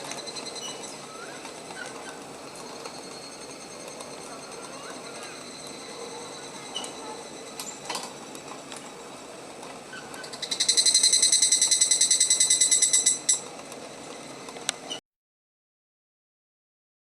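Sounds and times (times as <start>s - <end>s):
cicada calling: 0.0s - 8.4s, 9.9s - 15.0s.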